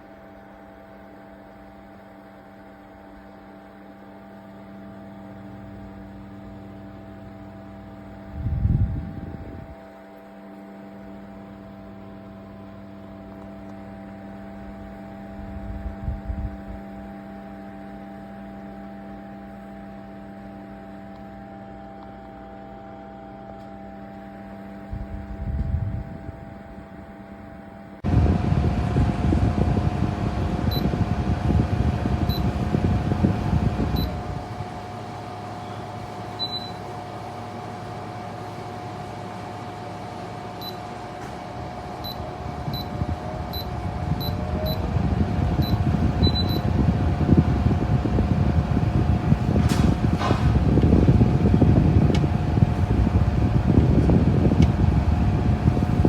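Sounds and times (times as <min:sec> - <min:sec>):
small fan motor hum: 0:00.0 - 0:56.0
rush of air with whine: 0:08.3 - 0:09.8, 0:24.8 - 0:36.5, 0:37.2 - 0:56.0.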